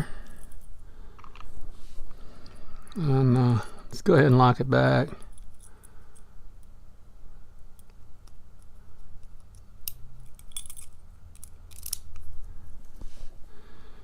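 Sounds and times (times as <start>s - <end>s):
padlock and keys clinking: 5.2s - 6.7s, 7.8s - 12.4s.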